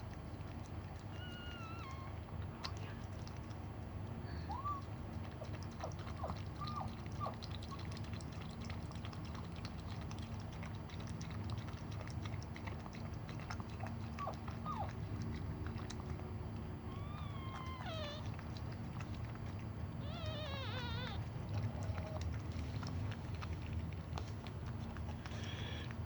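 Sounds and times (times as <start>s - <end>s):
steady low hum: 0.0s - 26.0s
dog whimpering: 1.1s - 2.2s, 4.3s - 7.8s, 14.1s - 15.0s, 16.8s - 22.9s, 25.1s - 26.0s.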